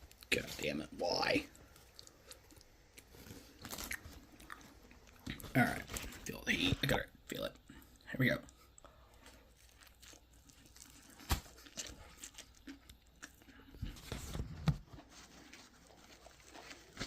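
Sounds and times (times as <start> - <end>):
person chewing crunchy food: 1.2 - 7.0, 8.4 - 17.0.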